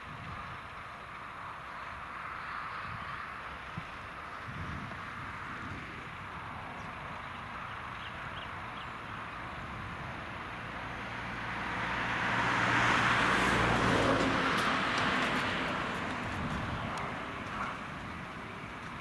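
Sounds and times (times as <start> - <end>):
tractor diesel engine hum: 0.0 - 19.0
plough working soil: 11.5 - 19.0.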